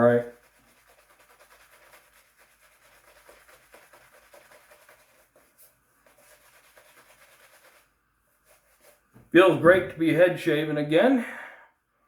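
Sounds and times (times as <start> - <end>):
shaving brush brushing lather: 0.0 - 9.2.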